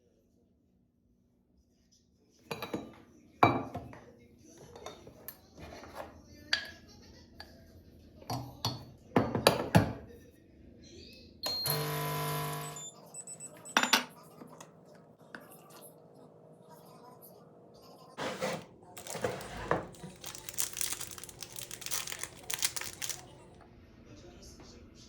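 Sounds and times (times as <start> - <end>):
dishes and utensils clinking: 2.5 - 4.0, 18.2 - 23.5.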